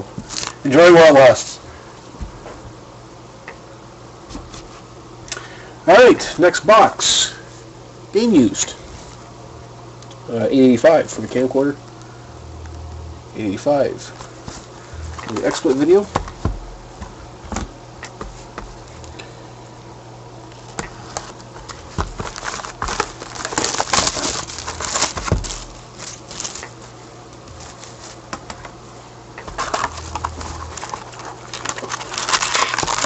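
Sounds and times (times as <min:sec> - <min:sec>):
shrink wrap and cardboard crinkling: 0:00.0 - 0:00.6, 0:14.0 - 0:16.5, 0:20.5 - 0:28.6, 0:29.4 - 0:33.0
steady low hum: 0:00.0 - 0:33.0.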